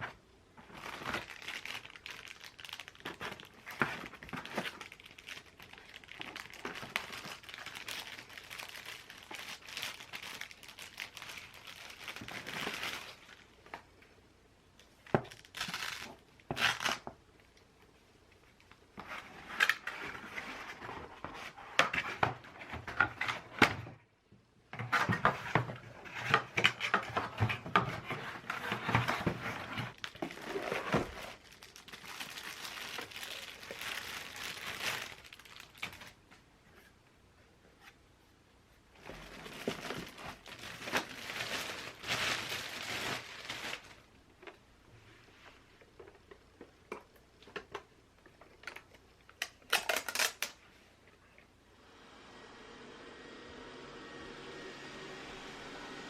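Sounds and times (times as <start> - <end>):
packaging crinkling and rustling: 0.0 - 13.9, 14.8 - 17.2, 24.8 - 36.3, 39.0 - 44.6, 45.8 - 50.6
packaging tearing: 0.7 - 13.4, 15.3 - 17.0, 29.9 - 36.2, 49.4 - 50.6.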